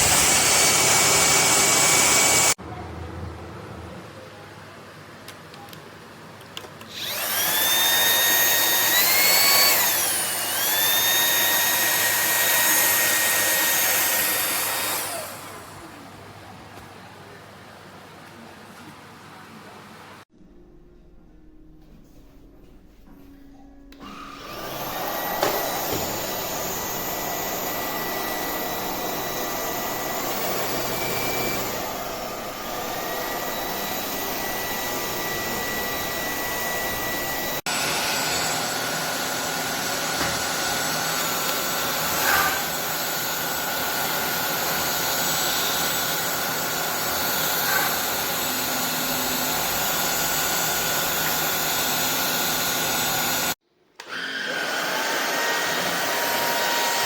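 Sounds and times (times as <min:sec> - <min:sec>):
stick vacuum motor whining: 0:00.0 - 0:02.6, 0:06.8 - 0:15.9, 0:23.9 - 0:57.0.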